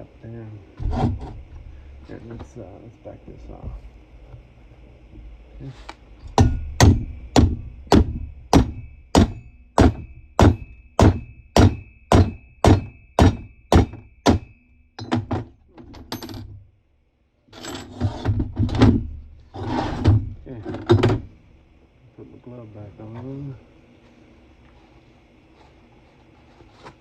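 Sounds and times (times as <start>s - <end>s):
hammer blows on metal: 6.2s - 15.4s.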